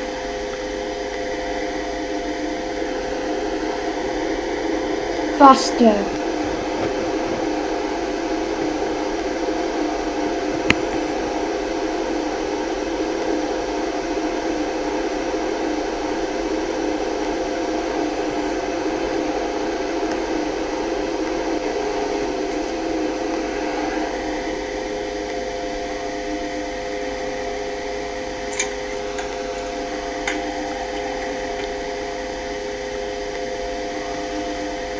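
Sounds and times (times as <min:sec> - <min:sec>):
lift car whirring hum: 0:00.0 - 0:11.1.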